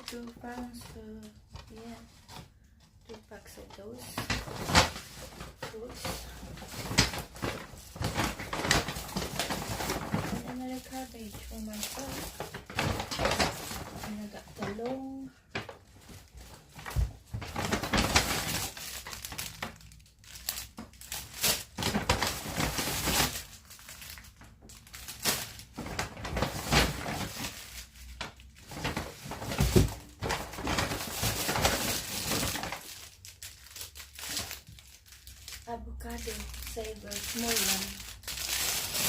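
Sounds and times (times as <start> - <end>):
packaging crinkling: 0.0 - 39.0
packaging tearing: 16.4 - 39.0.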